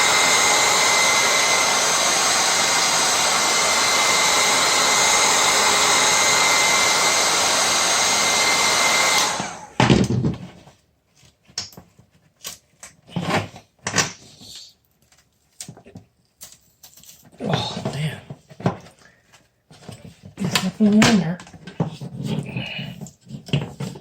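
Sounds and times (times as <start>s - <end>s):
electric blower whirring: 0.0s - 9.8s.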